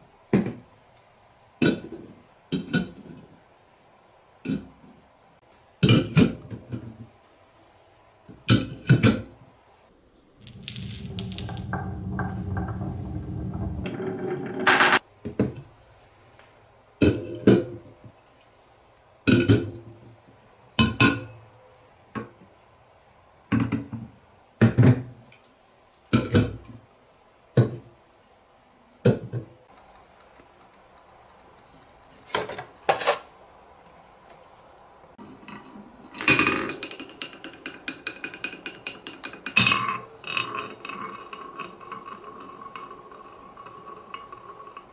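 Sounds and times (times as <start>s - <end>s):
marbles rolling down a run: 10.4s - 13.4s
marbles clinking and knocking: 10.4s - 13.6s.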